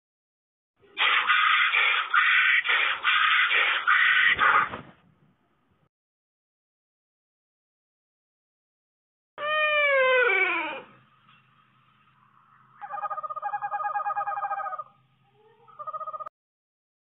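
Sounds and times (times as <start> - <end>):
quavering animal calls: 1.0 - 4.7, 9.4 - 11.1, 12.2 - 16.3
animal call falling in pitch: 9.4 - 11.0.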